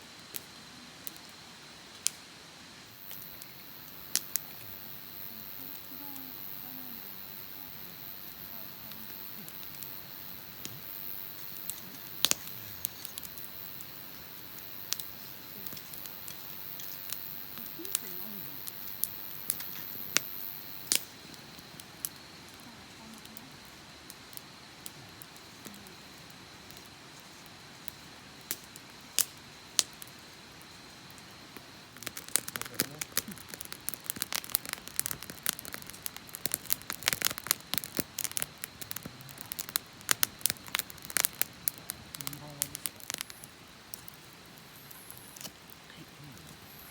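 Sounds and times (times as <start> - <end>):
campfire crackling: 0.0 - 46.9.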